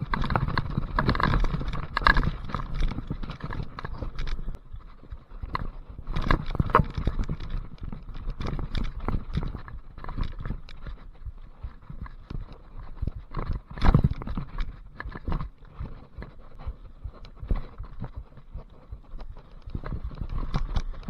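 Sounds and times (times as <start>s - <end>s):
bike knocking and rattling: 0.0s - 21.0s.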